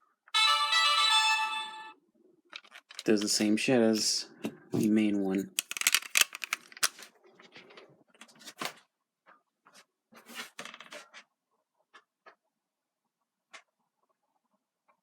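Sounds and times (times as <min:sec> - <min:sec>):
plastic clicks and scrapes: 0:02.5 - 0:03.3, 0:04.8 - 0:08.8.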